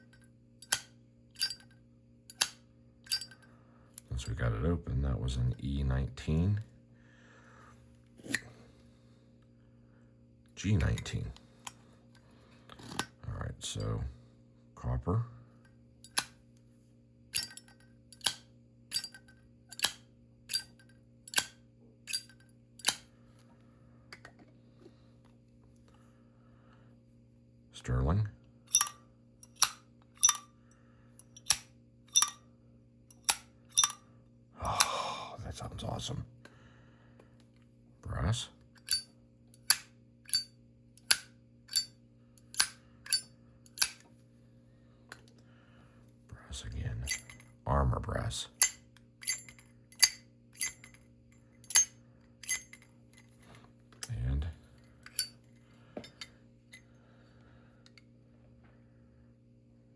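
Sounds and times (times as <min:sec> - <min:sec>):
lighter lid clicking: 0:43.8 - 0:44.0.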